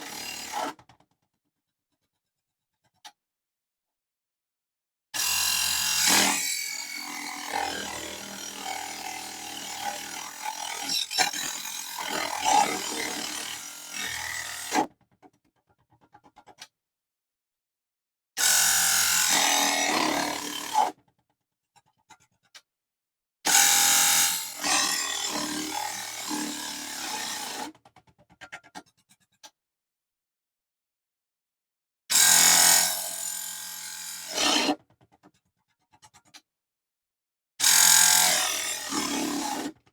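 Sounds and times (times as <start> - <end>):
table saw cutting metal: 0.0 - 0.8, 5.2 - 14.9, 18.4 - 20.9, 23.5 - 27.7, 32.2 - 34.8, 37.6 - 39.8.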